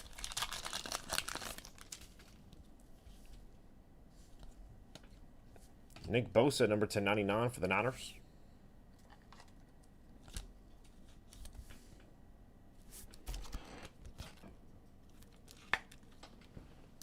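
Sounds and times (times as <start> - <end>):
trading cards rustling: 0.0 - 2.5.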